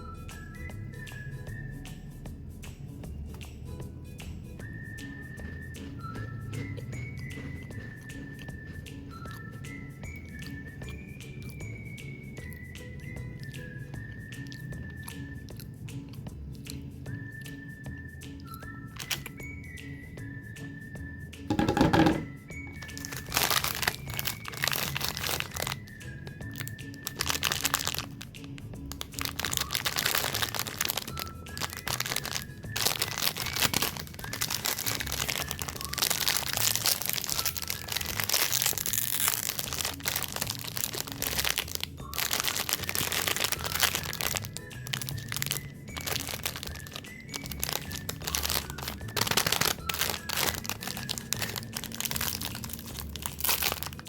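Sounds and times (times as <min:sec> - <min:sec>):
music: 0:00.0 - 0:54.0
crunchy chewing: 0:04.7 - 0:11.8, 0:14.3 - 0:17.6, 0:22.8 - 0:54.0.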